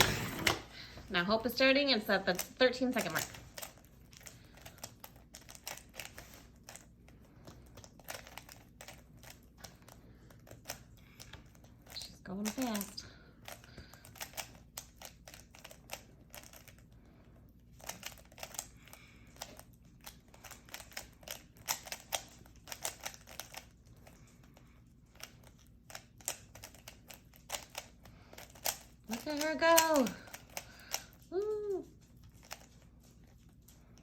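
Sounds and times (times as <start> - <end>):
puzzle cube clicking: 2.3 - 6.9, 7.6 - 16.8, 17.8 - 18.8, 19.4 - 23.7, 25.2 - 31.0.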